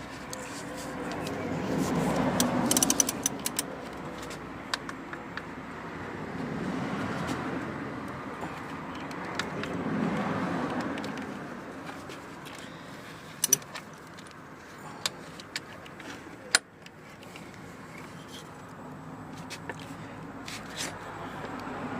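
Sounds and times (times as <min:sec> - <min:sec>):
spanner clicking and clinking: 0:02.2 - 0:05.5, 0:13.3 - 0:14.4.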